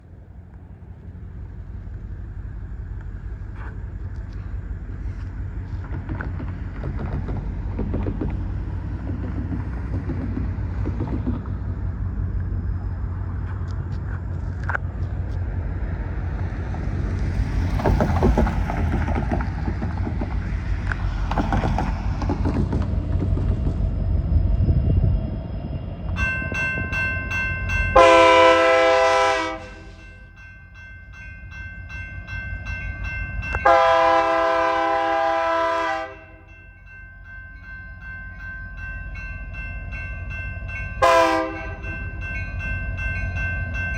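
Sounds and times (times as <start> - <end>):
diesel locomotives running: 0.0 - 43.9.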